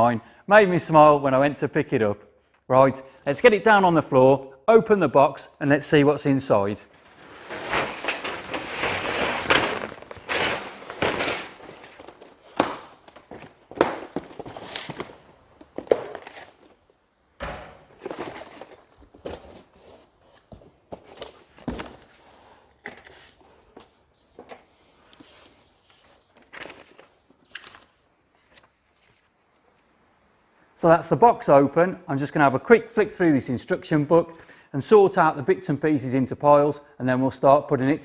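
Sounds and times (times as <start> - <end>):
cardboard scraping and rustling: 6.5 - 16.8, 17.9 - 22.2, 25.2 - 29.2
knocks and thunks of parts: 6.9 - 16.0, 17.4 - 18.3.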